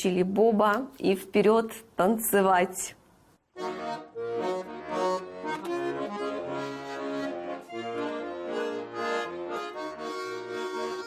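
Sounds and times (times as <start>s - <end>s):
accordion melody: 3.5s - 11.0s.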